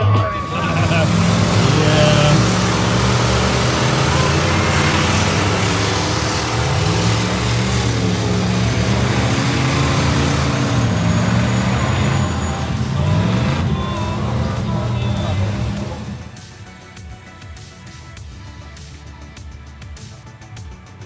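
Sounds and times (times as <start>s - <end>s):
truck engine revving: 0.0s - 17.0s
dense rushing noise: 0.2s - 16.4s.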